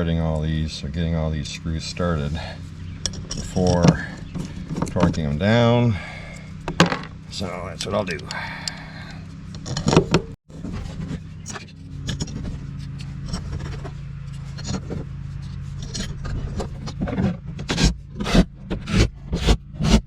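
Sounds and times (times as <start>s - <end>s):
screws scraping on metal: 3.0s - 5.3s, 10.9s - 20.0s.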